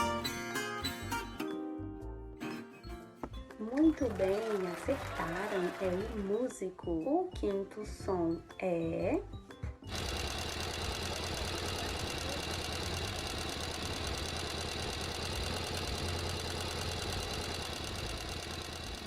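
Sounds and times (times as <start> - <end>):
sewing machine running: 9.9 - 19.0.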